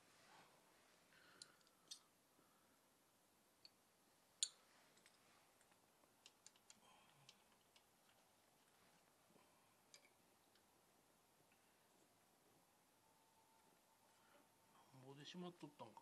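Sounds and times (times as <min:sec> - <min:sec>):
faint tool clicks and taps: 0:04.4 - 0:08.3.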